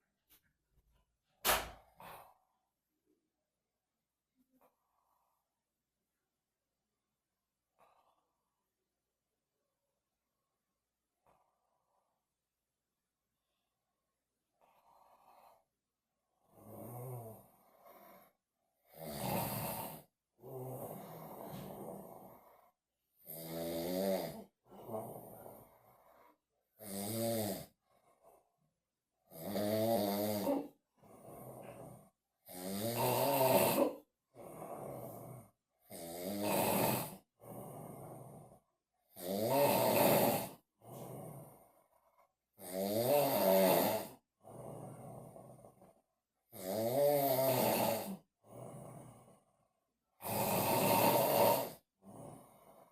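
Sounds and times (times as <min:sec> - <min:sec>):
quiet breath: 0:01.8 - 0:03.3, 0:04.4 - 0:06.3, 0:07.1 - 0:23.3, 0:24.0 - 0:26.9, 0:27.6 - 0:29.3, 0:30.4 - 0:32.9, 0:33.8 - 0:36.4, 0:37.0 - 0:39.0, 0:40.4 - 0:42.6, 0:48.0 - 0:52.9
man snoring: 0:16.4 - 0:28.4, 0:29.2 - 0:52.9.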